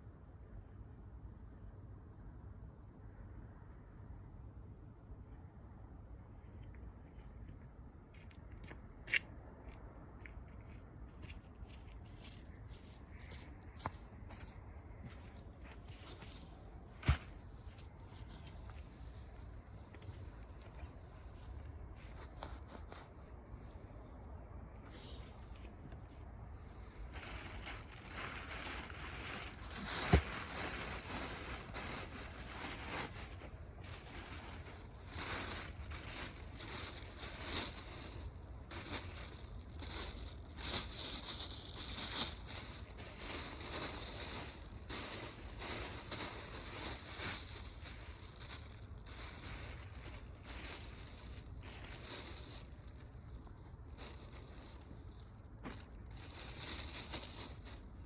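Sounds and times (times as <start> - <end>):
twigs crackling and snapping: 27.1 - 57.8.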